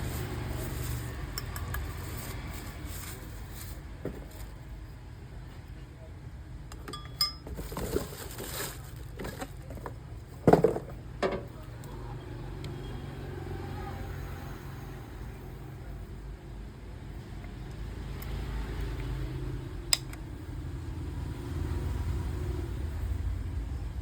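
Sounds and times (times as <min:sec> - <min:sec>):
rustling: 0:00.0 - 0:04.6, 0:07.5 - 0:11.5
ringing metallic clink: 0:06.9 - 0:07.4.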